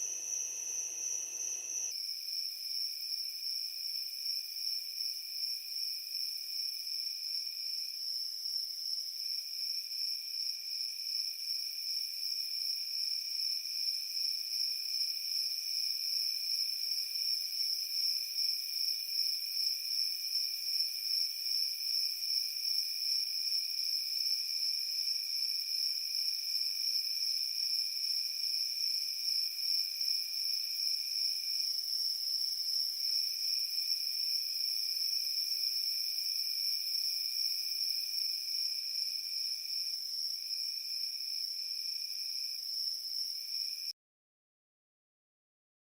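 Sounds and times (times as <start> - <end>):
lower insect trill: 0.0 - 1.9
high-pitched insect trill: 0.0 - 43.9.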